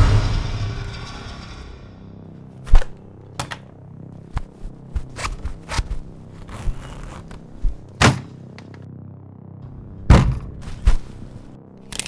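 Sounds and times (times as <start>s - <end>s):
loud impact: 0.0s - 3.0s, 9.8s - 11.5s
sharp knocks and crunches: 2.7s - 8.8s, 10.1s - 12.0s
rustling scrape: 4.2s - 8.5s, 10.5s - 11.6s.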